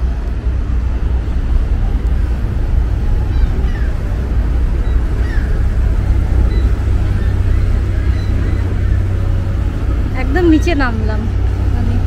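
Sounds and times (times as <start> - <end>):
low rumble of city ambience: 0.0 - 12.0.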